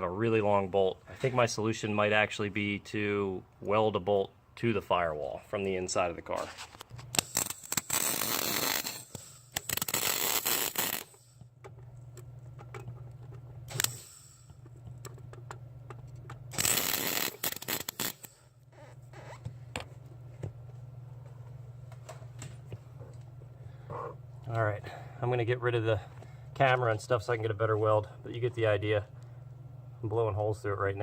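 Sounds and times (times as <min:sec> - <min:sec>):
arc welder crackling: 0:06.2 - 0:19.3
welder low hum: 0:07.0 - 0:20.1.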